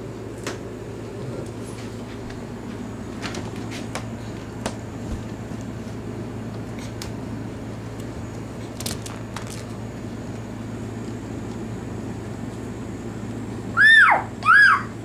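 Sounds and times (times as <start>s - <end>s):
steady low hum: 0.0s - 15.0s
dog whining: 13.8s - 15.0s.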